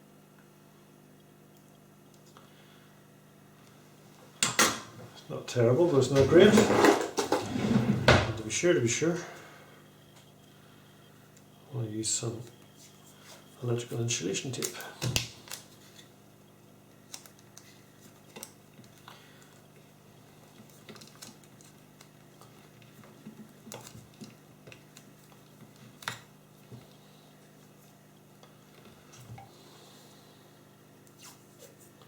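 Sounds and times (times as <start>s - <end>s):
steady low hum: 0.0s - 32.0s
soft tape rustles: 14.5s - 16.2s, 16.8s - 30.3s.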